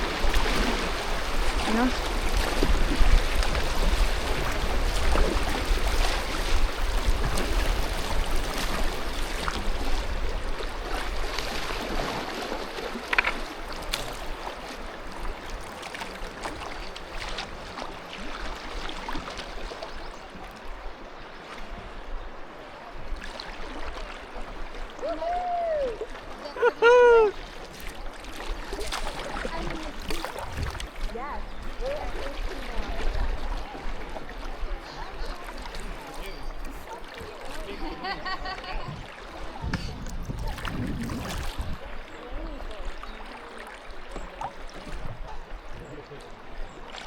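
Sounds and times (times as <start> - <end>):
sharp water splashes: 0.0 - 20.1, 23.2 - 45.1
rushing river rapids: 0.0 - 21.8.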